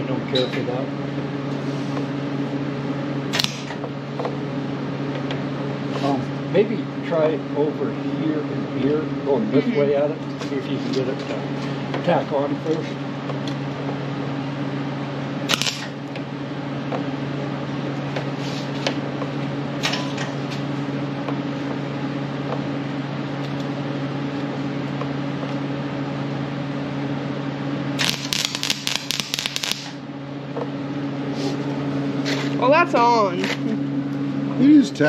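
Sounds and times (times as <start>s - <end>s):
arc welder humming: 0.0s - 35.0s
welding arc crackling: 3.3s - 3.8s, 15.4s - 16.0s, 28.0s - 30.0s.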